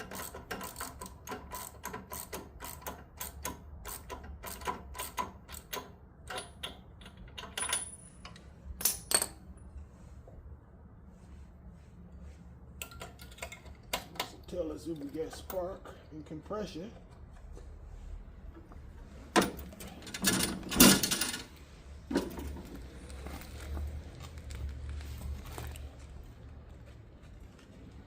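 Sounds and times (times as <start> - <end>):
loud ratchet clacks: 0.0 - 6.8
socket ratchet clicking: 0.0 - 7.7.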